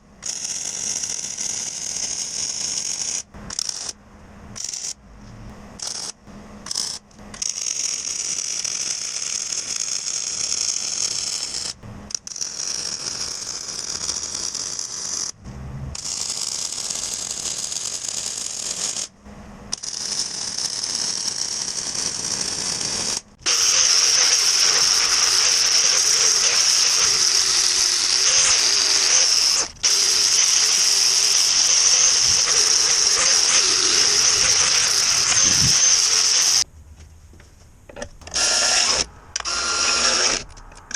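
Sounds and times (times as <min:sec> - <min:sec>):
power tool running: 0:19.7 - 0:36.6, 0:38.2 - 0:40.9.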